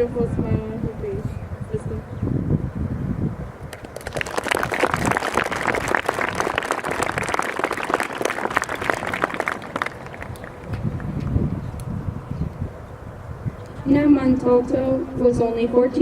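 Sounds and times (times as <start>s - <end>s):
audience applauding: 3.7s - 11.1s.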